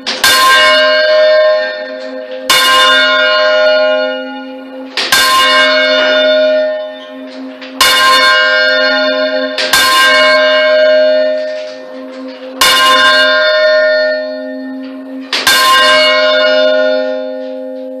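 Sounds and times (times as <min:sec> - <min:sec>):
church bell clangs: 0:00.0 - 0:18.0.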